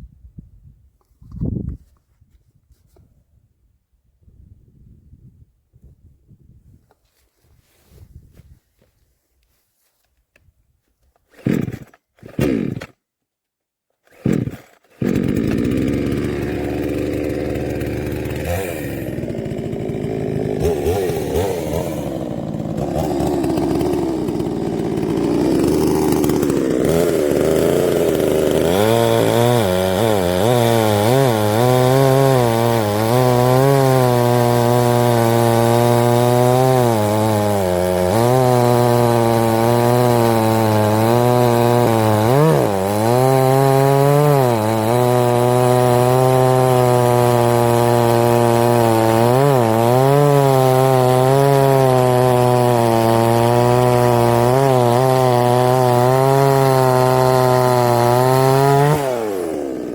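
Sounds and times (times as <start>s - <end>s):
chainsaw cutting wood: 11.1s - 13.1s, 14.0s - 59.9s.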